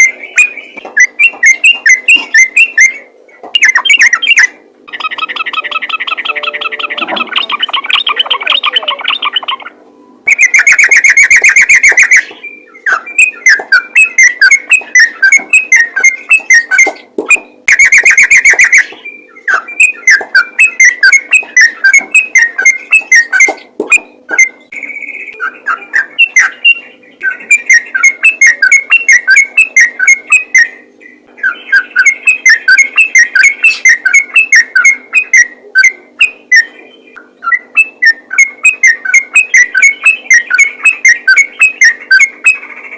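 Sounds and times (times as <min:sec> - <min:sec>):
bird chirping: 0:00.0 - 0:42.9
bird chattering bursts: 0:03.6 - 0:36.8.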